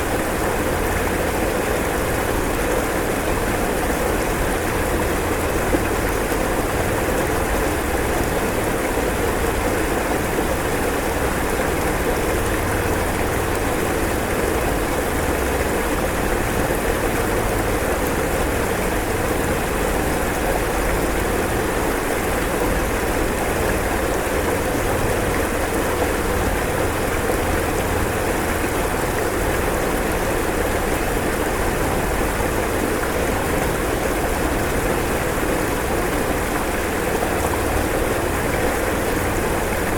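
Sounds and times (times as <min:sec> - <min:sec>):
floodwater rushing: 0:00.0 - 0:39.9.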